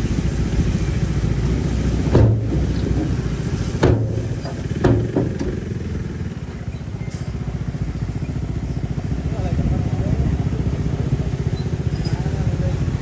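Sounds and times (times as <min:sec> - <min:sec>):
bulldozer engine running: 0:00.0 - 0:13.0
sharp metallic clanks: 0:02.0 - 0:06.2.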